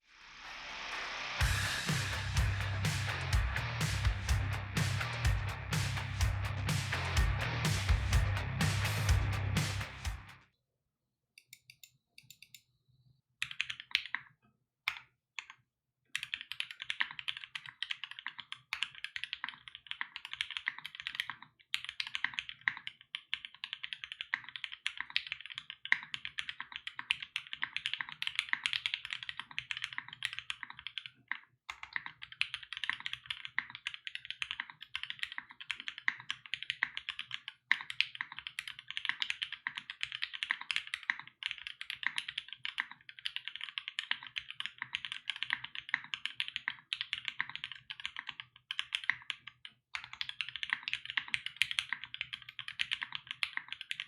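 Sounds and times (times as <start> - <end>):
fast typing on mechanical keyboard: 16.2 - 54.0.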